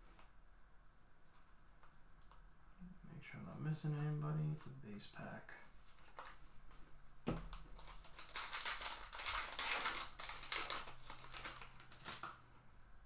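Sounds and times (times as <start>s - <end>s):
wrapper tearing and crinkling: 7.5s - 12.4s.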